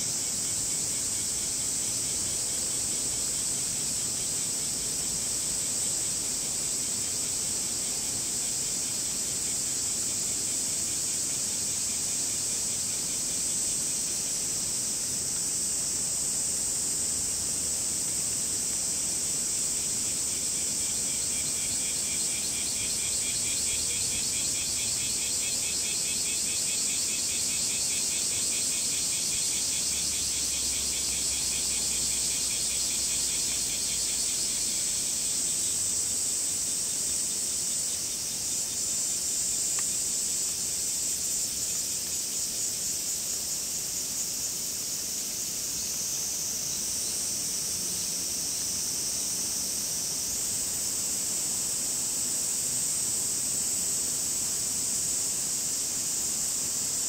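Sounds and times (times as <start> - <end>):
cicadas droning: 0.0 - 57.0
pulsing cicada call: 0.0 - 57.0.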